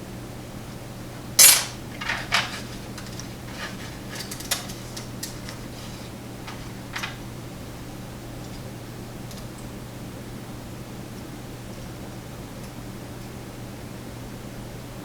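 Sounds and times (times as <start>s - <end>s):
padlock parts clanking and clicking: 1.4s - 5.6s.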